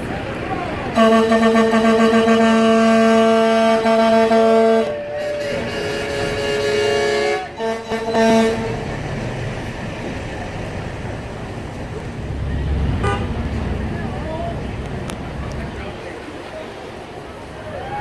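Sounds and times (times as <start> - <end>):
low rumble of vehicles: 0.0 - 18.0
air horn blasts: 1.0 - 8.8, 13.0 - 13.4
higher gliding horn tone: 1.0 - 8.9.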